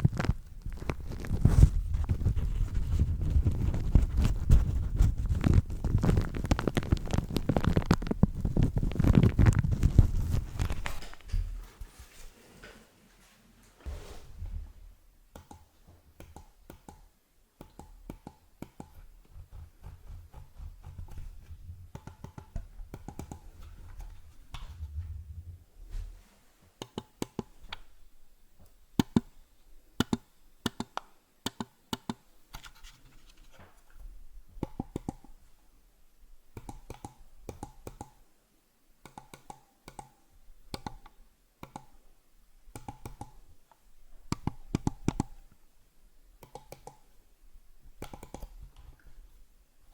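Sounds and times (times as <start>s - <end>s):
mouse rubbing and scratching: 0.0s - 11.1s.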